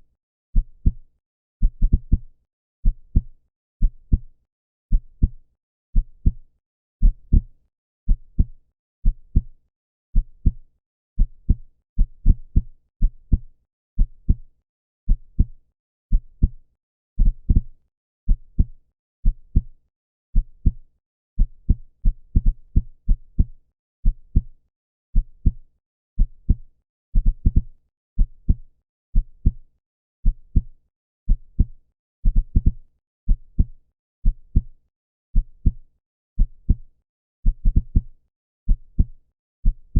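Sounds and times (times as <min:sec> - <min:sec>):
heartbeat thumps: 0:27.2 - 0:27.7.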